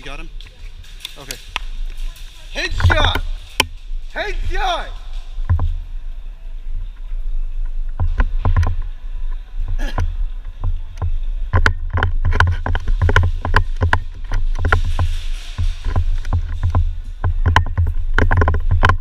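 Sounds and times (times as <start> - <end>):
sharp clicks and knocks: 0.0 - 5.9, 9.9 - 19.0.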